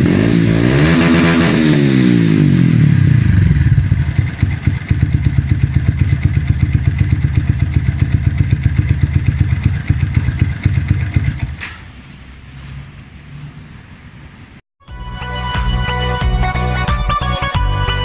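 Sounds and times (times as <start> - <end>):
motorcycle engine idling: 1.9 - 11.6.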